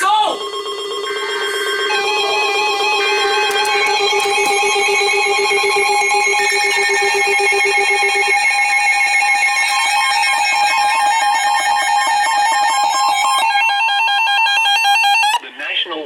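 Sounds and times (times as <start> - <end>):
low pulsing beep: 0.0 - 10.1
electronic alert tones pulsing: 0.0 - 15.4.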